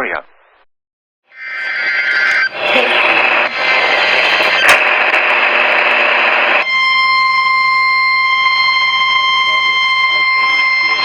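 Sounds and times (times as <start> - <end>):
radio static hiss: 1.4 - 6.6
steady alarm tone: 1.4 - 11.0.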